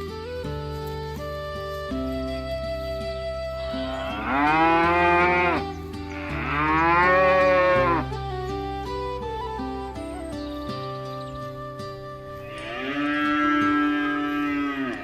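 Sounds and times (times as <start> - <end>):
soft background music: 0.0 - 15.0
cow mooing: 3.8 - 8.1, 12.5 - 15.0.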